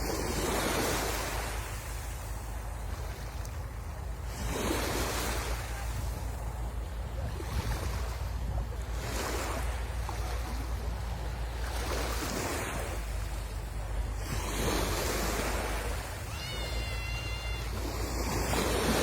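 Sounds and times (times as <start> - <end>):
wind rumbling on microphone: 0.0 - 16.3
waves breaking on shore: 0.0 - 19.0
brief high-pitched call: 16.2 - 18.3.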